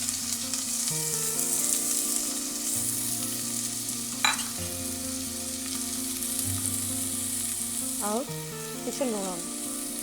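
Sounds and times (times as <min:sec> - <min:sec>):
onions sizzling in oil: 0:00.0 - 0:10.0.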